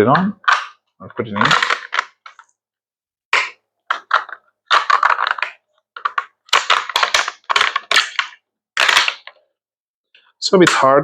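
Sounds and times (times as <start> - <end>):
plastic parts scraping and crackling: 0.1 - 2.5, 3.3 - 9.5.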